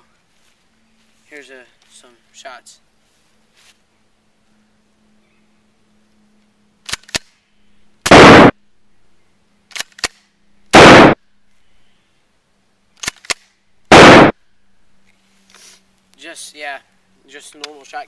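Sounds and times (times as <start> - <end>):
shotgun blast: 8.1 - 8.6, 10.8 - 11.2, 13.9 - 14.3.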